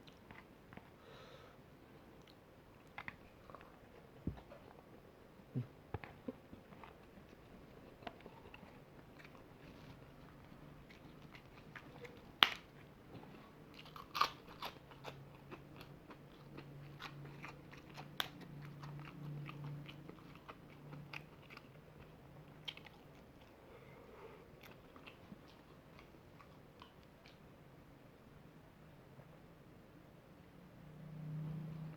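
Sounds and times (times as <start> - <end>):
person chewing and crunching: 6.0 - 23.6, 24.5 - 27.4.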